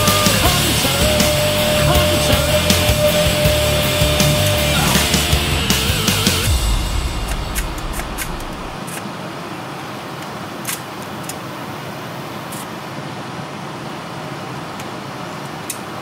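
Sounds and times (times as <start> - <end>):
music: 0.0 - 8.8
vehicle engine running: 0.0 - 8.8.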